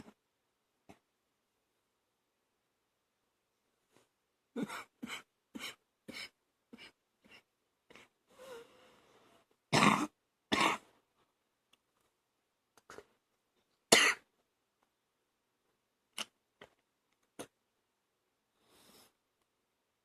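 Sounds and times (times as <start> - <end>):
woman coughing on phlegm: 13.9 - 14.3.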